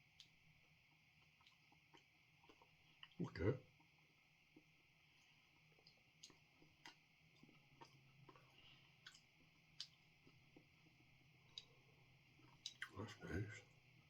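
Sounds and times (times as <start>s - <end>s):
mouth chewing crunchy food: 1.2s - 13.2s.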